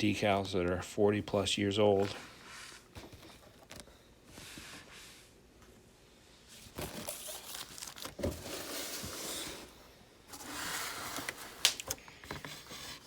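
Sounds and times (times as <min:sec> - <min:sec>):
packaging rustling and crinkling: 0:06.5 - 0:13.0.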